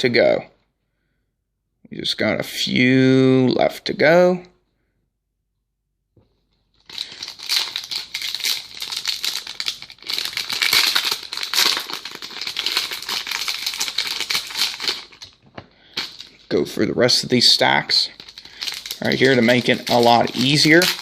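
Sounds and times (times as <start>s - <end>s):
wrappers crinkling and rustling: 6.5s - 16.5s, 17.9s - 21.0s.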